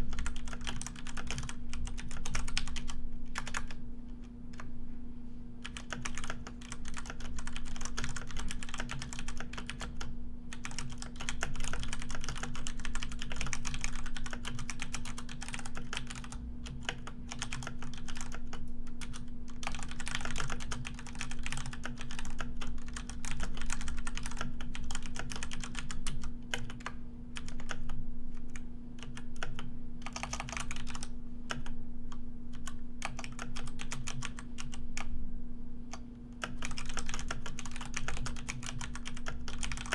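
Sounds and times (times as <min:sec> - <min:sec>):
faint low hum: 0:00.0 - 0:39.9
keyboard typing: 0:00.1 - 0:03.8, 0:05.6 - 0:27.9, 0:29.0 - 0:31.7, 0:32.6 - 0:35.1, 0:35.9 - 0:39.9.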